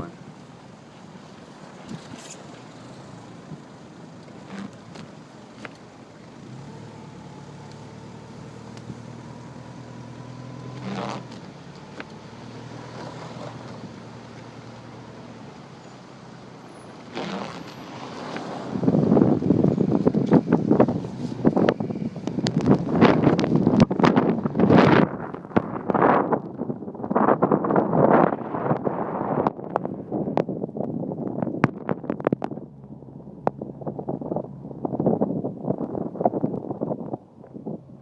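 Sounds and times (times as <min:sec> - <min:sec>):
car engine hum: 0:00.0 - 0:38.0
tyre and road noise: 0:00.0 - 0:38.0
loud uneven rumbling: 0:17.0 - 0:38.0.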